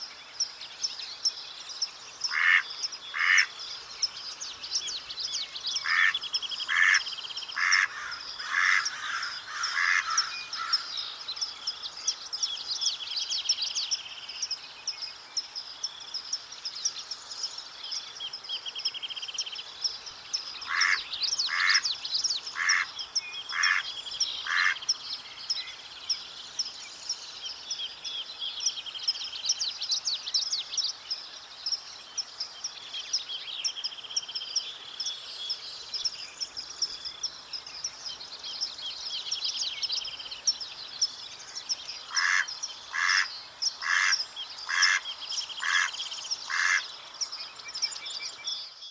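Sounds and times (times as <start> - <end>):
songbirds chirping: 0.0 - 48.9
mallard quacking: 2.3 - 2.6, 3.2 - 3.5, 42.2 - 45.0.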